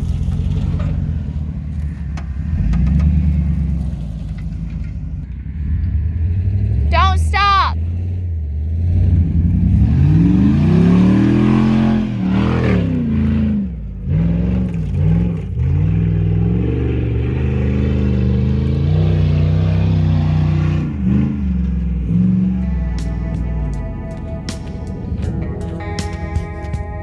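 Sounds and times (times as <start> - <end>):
engine revving hard: 5.5 - 24.6.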